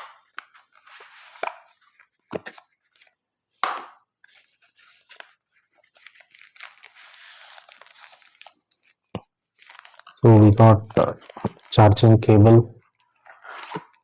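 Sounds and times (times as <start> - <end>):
cardboard packaging rustling: 4.2 - 10.2, 11.0 - 11.7.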